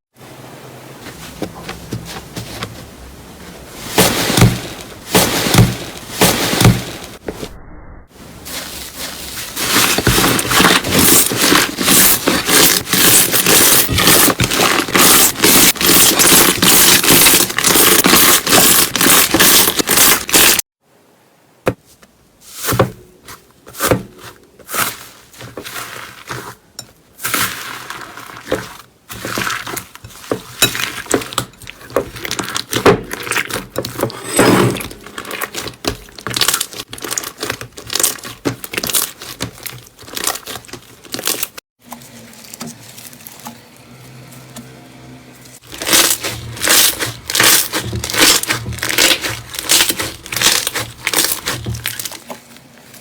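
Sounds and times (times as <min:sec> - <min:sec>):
slime squishing and popping: 0:09.7 - 0:20.6, 0:35.0 - 0:41.6, 0:45.6 - 0:52.2.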